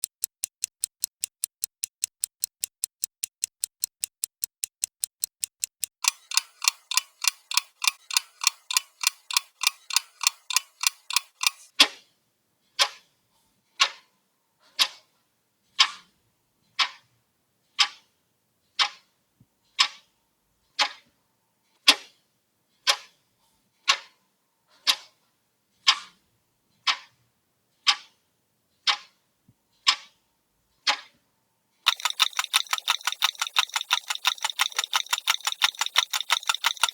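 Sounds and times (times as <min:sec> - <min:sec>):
clock ticking: 0:00.0 - 0:11.7, 0:31.9 - 0:36.9.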